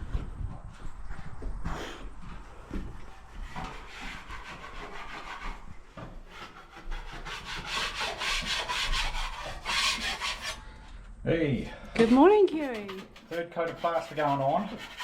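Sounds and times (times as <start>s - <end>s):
hand scraper scraping plaster: 3.1s - 10.6s, 12.0s - 15.0s.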